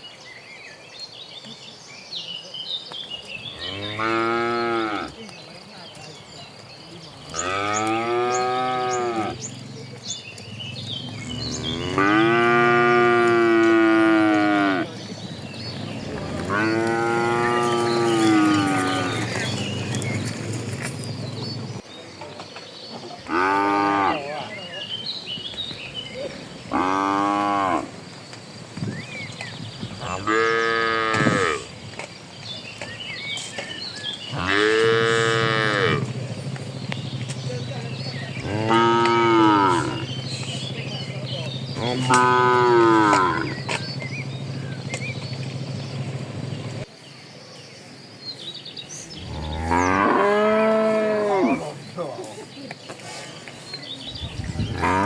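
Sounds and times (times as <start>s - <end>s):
cattle mooing: 3.5s - 5.2s, 7.3s - 9.6s, 10.7s - 14.9s, 16.0s - 19.6s, 26.7s - 27.9s, 30.0s - 31.7s, 34.3s - 36.2s, 38.4s - 40.2s, 41.8s - 44.3s, 49.2s - 51.8s, 54.7s - 55.0s
steady low hum: 34.9s - 46.9s.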